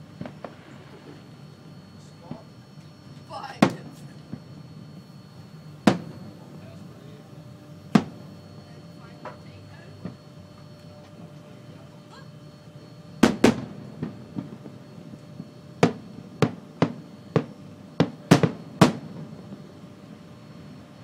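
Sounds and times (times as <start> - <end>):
firework shells bursting: 7.9 - 8.2, 13.2 - 14.6.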